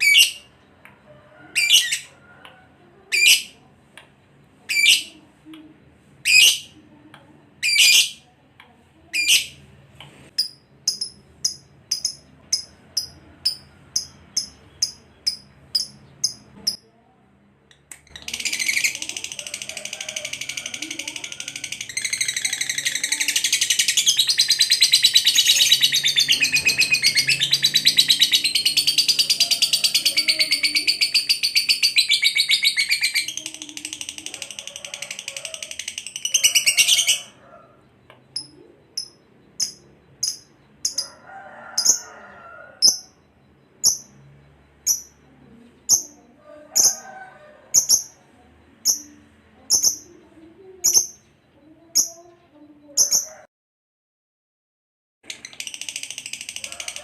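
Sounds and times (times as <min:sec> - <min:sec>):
lovebird chattering trill: 0:10.4 - 0:16.8, 0:18.1 - 0:37.4, 0:38.3 - 0:41.0, 0:42.8 - 0:43.2, 0:44.8 - 0:45.2, 0:48.8 - 0:50.2.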